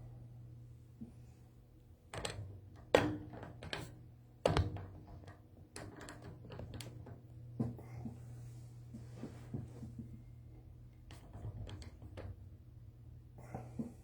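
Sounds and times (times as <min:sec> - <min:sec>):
steady low hum: 0:00.0 - 0:05.8.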